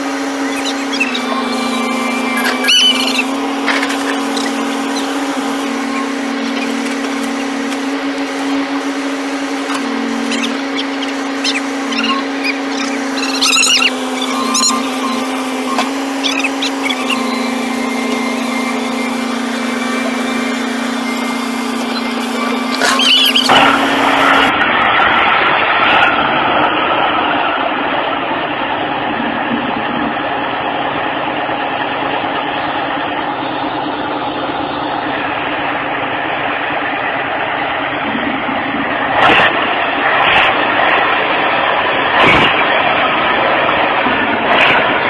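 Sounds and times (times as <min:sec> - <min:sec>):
heavy machine engine running: 0:00.0 - 0:24.6.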